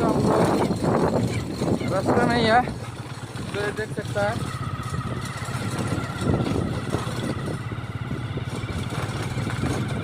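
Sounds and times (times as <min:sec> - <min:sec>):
motorcycle engine running: 0:00.0 - 0:10.0
road noise: 0:00.0 - 0:10.0.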